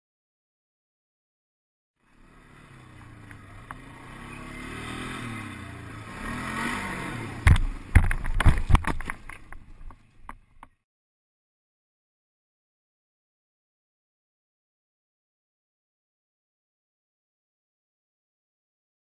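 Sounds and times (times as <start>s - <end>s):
atv engine revving: 2.0s - 9.6s
loud thumps and knocks: 7.4s - 9.4s
small clatters: 7.4s - 10.8s.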